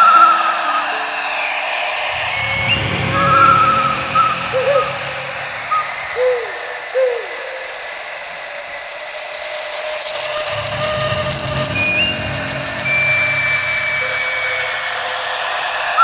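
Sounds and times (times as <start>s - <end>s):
high whistle tone: 0.0s - 16.0s
rain-like percussion hiss: 0.0s - 16.0s.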